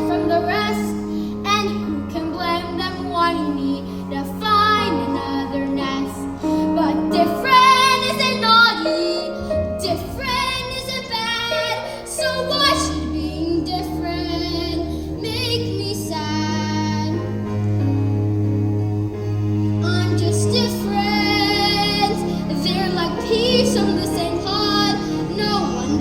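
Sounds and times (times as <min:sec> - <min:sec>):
child singing: 0:00.0 - 0:17.2, 0:19.8 - 0:26.0
instrumental accompaniment: 0:00.0 - 0:26.0.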